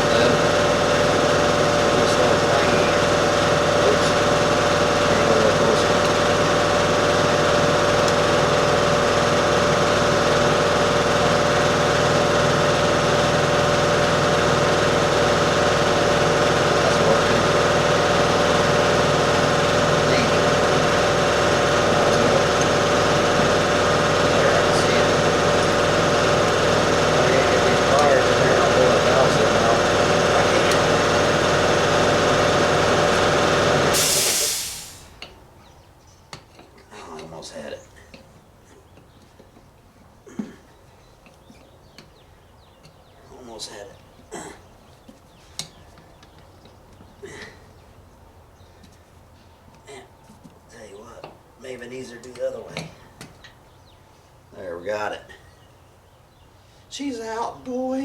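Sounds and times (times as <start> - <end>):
engine idling: 0.0 - 35.3
motor running: 0.0 - 35.3
loud hiss of air: 33.9 - 35.2.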